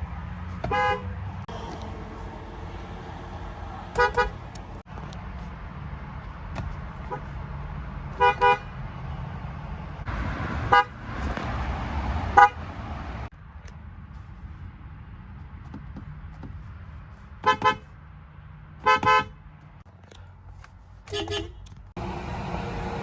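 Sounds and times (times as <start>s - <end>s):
car horn beeps: 0.6s - 1.1s, 4.0s - 4.4s, 8.2s - 8.7s, 18.8s - 19.4s, 21.1s - 21.6s.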